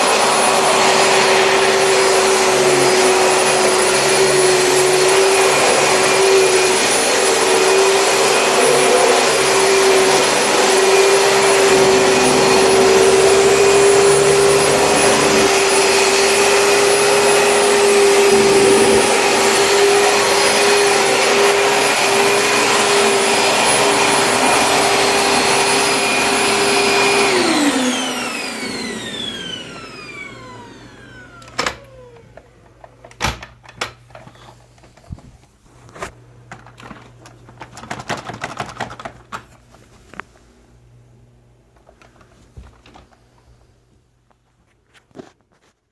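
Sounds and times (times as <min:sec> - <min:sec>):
vacuum cleaner motor whine: 0:00.0 - 0:34.6.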